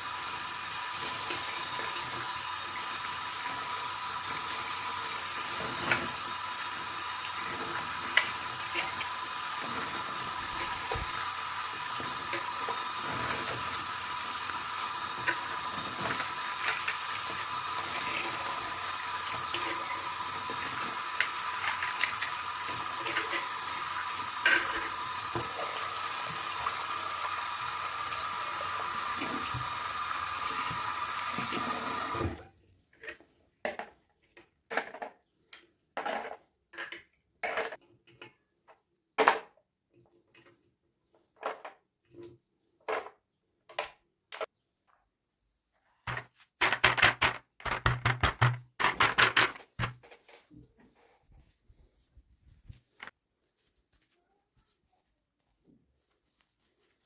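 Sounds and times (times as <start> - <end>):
plastic toy pieces tapping: 46.1 - 50.0.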